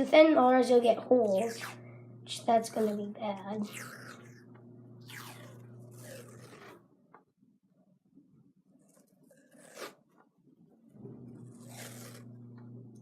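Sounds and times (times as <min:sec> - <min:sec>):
tape ripping off roll: 0:05.1 - 0:06.8, 0:09.3 - 0:10.2, 0:11.5 - 0:12.3.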